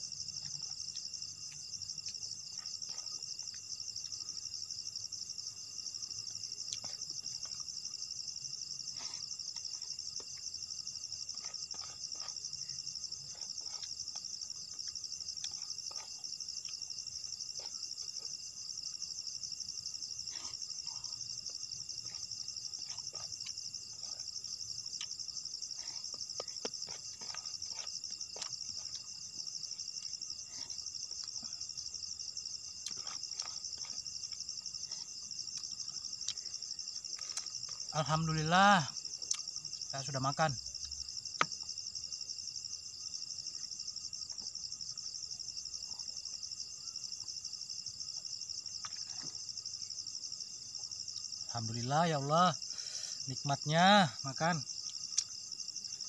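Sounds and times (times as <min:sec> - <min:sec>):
insects trilling: 0:00.0 - 0:56.0.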